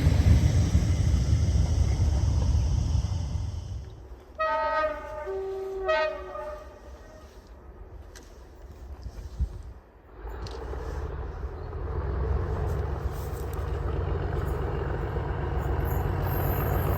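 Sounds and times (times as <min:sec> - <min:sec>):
passing train rumble: 0:00.0 - 0:16.9
train two-tone horn: 0:04.3 - 0:07.6.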